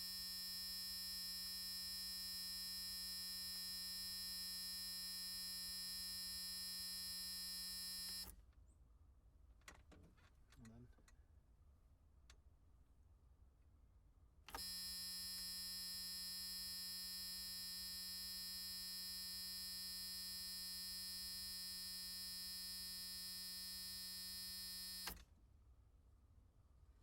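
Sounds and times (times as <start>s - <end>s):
long steady buzzer: 0.0s - 8.3s, 14.5s - 25.2s.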